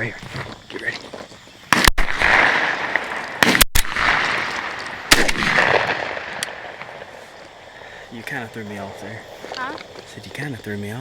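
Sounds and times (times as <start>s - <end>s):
shotgun shots echoing: 1.7s - 7.2s.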